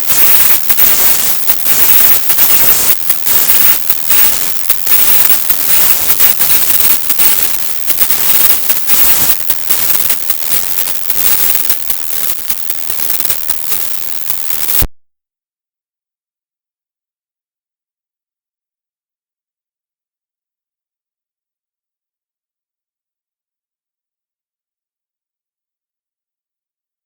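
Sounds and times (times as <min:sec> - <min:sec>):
distorted music hissing static: 0:00.0 - 0:14.9.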